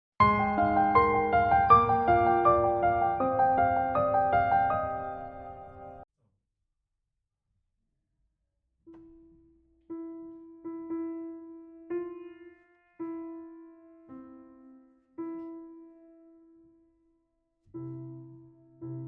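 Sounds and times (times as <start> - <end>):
piano chord with bass notes: 0.2 - 6.0.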